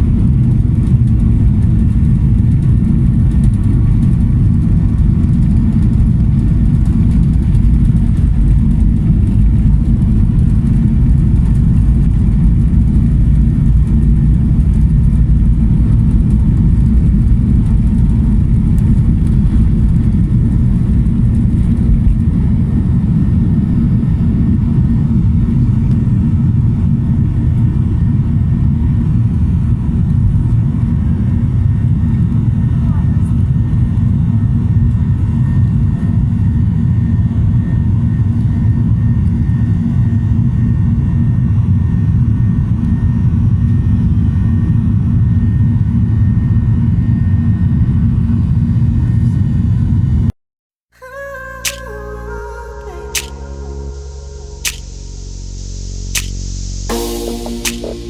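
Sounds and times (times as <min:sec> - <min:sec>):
jet engines rumbling in cabin: 0:00.0 - 0:50.2.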